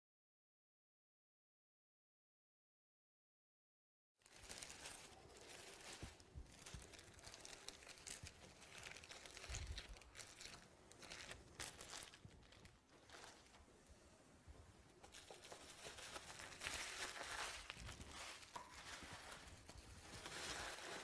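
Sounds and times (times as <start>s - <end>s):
crinkling handling noise: 4.2s - 21.0s.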